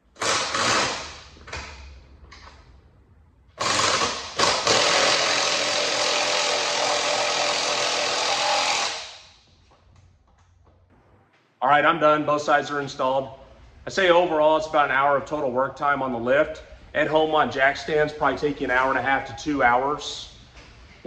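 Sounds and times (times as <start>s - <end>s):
handheld power tool running: 0.2s - 1.2s, 3.6s - 9.3s.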